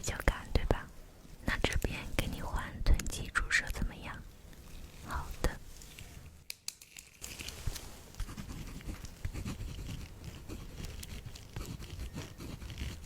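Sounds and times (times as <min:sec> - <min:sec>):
rustling and crinkling handling noise: 0:04.0 - 0:13.0.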